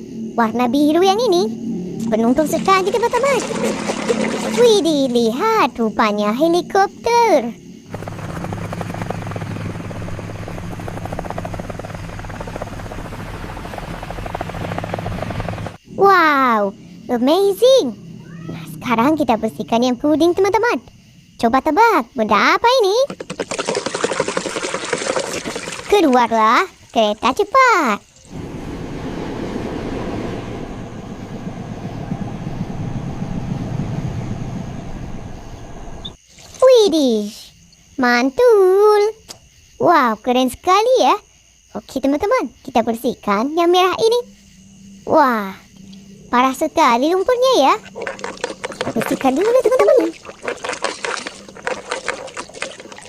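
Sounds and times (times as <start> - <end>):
helicopter rotor chop: 2.0 - 5.4, 7.9 - 15.9, 23.0 - 36.2, 46.4 - 51.9
low engine hum: 7.9 - 15.8, 28.2 - 36.2
train rumble and rail clatter: 28.4 - 36.2.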